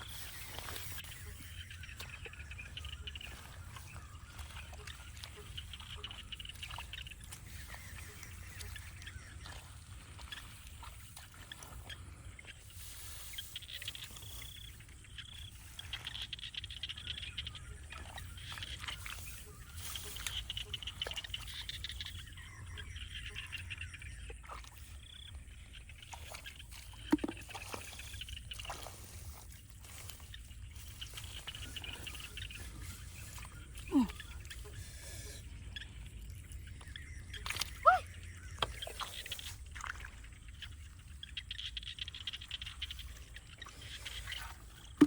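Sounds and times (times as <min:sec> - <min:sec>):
faint trickling water: 0:00.0 - 0:45.0
small animals trilling: 0:28.7 - 0:39.5.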